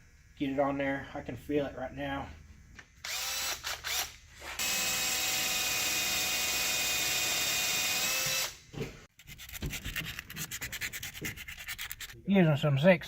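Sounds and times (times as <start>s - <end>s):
power drill whining: 3.0s - 8.6s
quick scratching strokes: 9.1s - 12.2s.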